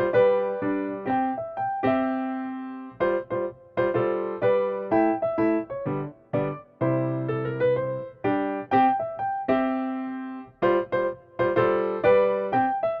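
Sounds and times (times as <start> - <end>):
piano notes and chords: 0.0 - 13.0.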